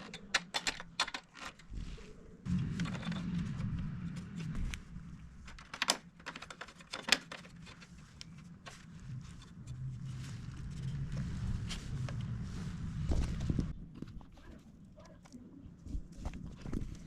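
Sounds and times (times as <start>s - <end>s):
hard objects clicking and tapping: 0.0s - 1.6s
steady low hum: 2.0s - 5.7s, 7.4s - 17.0s.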